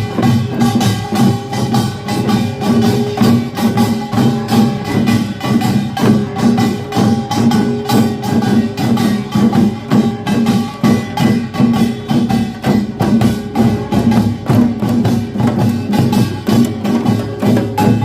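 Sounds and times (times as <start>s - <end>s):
clanging small gongs: 0.0s - 18.0s
drums beating fast rhythm: 0.0s - 18.0s.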